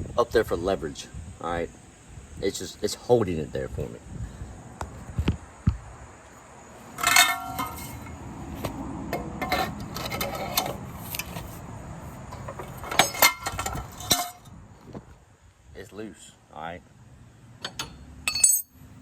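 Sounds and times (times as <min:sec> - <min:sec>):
metal scraping: 0:06.8 - 0:14.4
metal tools clanking: 0:06.9 - 0:11.6, 0:12.3 - 0:14.4, 0:17.6 - 0:18.8.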